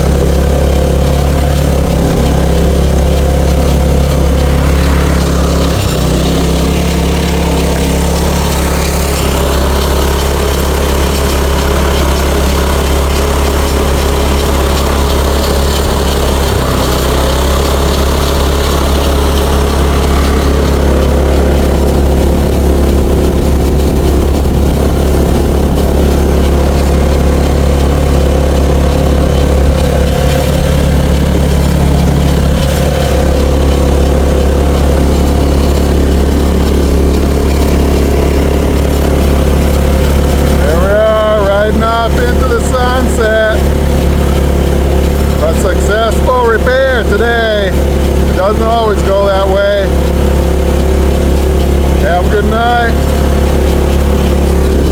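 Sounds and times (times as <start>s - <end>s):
golf cart engine droning: 0.0s - 54.9s.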